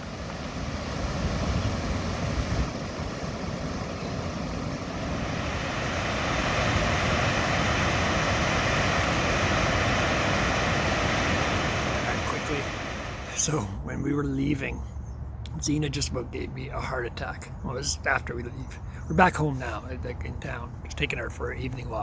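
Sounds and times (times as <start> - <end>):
wind on microphone: 0.0 - 13.4.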